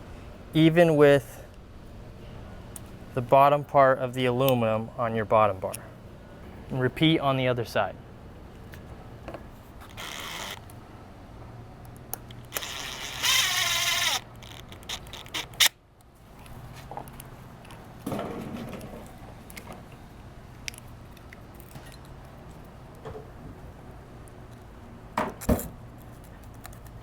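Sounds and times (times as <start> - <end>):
rasping zip: 9.8 - 10.6, 12.5 - 15.7.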